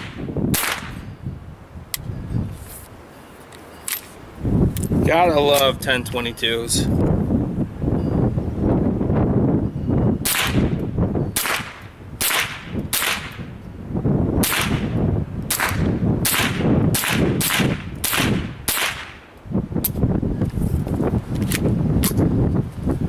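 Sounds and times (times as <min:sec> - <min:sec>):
rifle shots cracking: 0:11.4 - 0:13.4, 0:14.4 - 0:14.9, 0:15.5 - 0:19.2.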